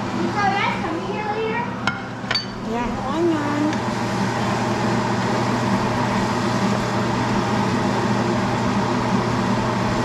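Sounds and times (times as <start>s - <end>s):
low mechanical hum: 0.0s - 10.0s.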